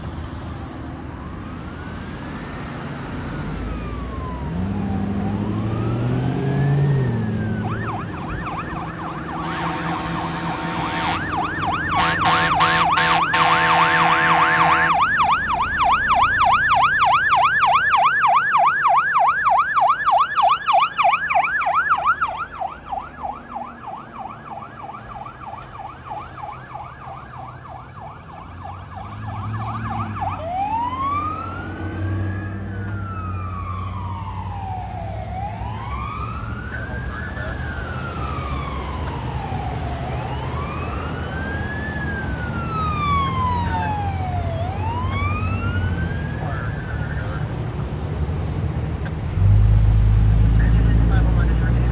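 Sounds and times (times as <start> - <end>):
fire engine siren wailing and yelping: 0.9 - 51.9
loud horn blasts: 9.2 - 15.2.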